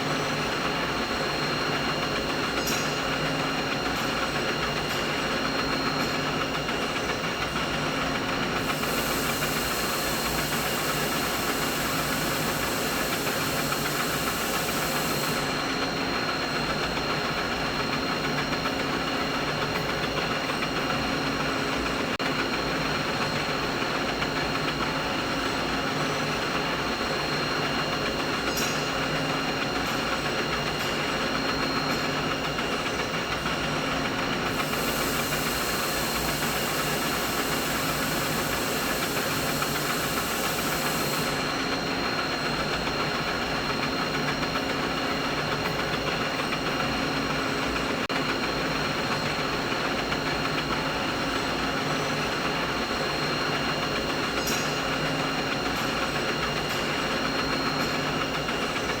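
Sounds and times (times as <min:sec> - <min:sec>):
machinery hum and hiss: 0:00.0 - 0:59.0
high hiss: 0:08.6 - 0:15.6, 0:34.5 - 0:41.7.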